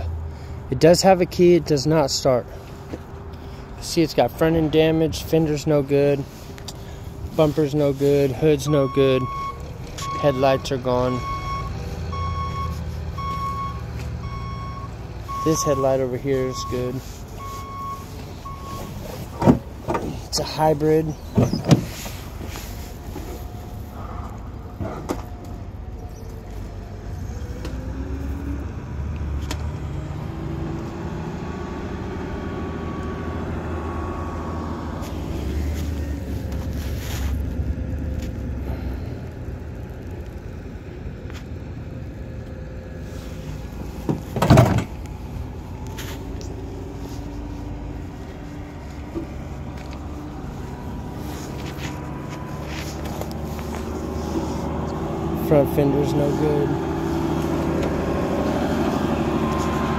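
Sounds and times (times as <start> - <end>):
vehicle engine rumbling: 0.0 - 59.9.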